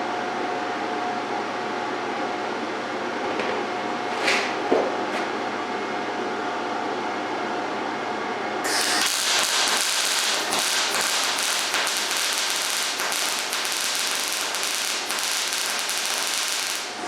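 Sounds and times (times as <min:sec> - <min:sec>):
steady hum: 0:08.6 - 0:17.0
welding arc crackling: 0:08.7 - 0:17.0.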